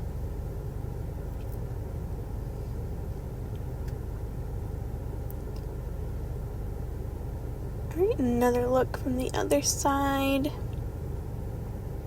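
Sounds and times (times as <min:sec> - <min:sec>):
low rumble and hum: 0:00.0 - 0:12.0
faint light ticks: 0:03.5 - 0:04.0, 0:05.2 - 0:05.8.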